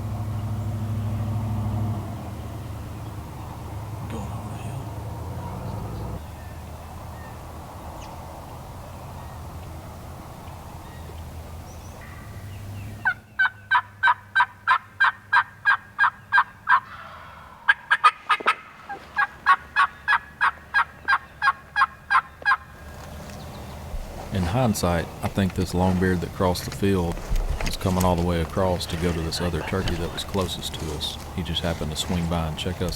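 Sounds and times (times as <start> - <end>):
low background noise: 0.0 - 32.9
turkey yelping: 13.0 - 22.7, 26.3 - 32.9.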